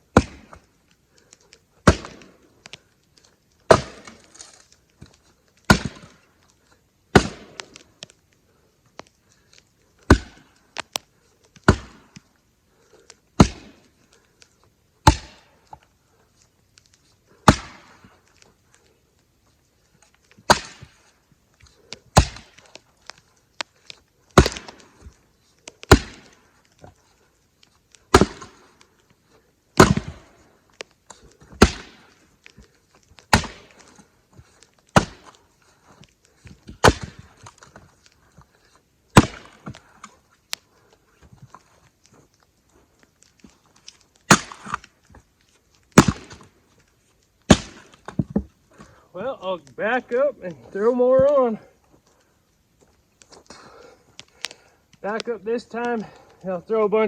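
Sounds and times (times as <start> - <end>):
axe chopping firewood: 0.0 - 0.7, 1.8 - 2.8, 3.6 - 6.2, 7.1 - 8.1, 10.0 - 12.3, 13.0 - 14.0, 15.0 - 15.8, 16.8 - 18.5, 20.3 - 21.0, 22.1 - 27.0, 27.9 - 29.0, 29.8 - 38.2, 39.1 - 40.6, 43.2 - 44.9, 45.9 - 46.6, 47.4 - 49.0.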